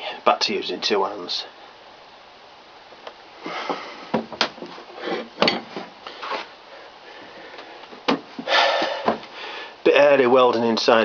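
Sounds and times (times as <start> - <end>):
tools knocking and clinking: 5.4 - 5.9.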